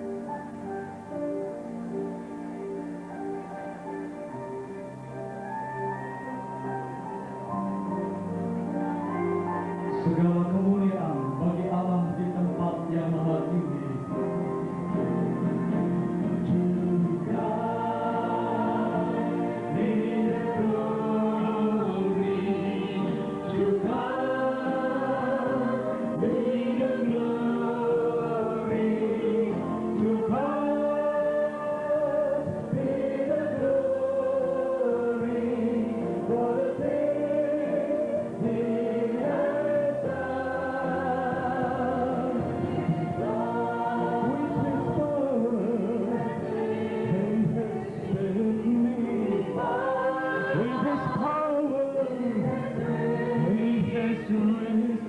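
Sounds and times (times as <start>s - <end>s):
choir singing slow song: 14.6s - 55.0s.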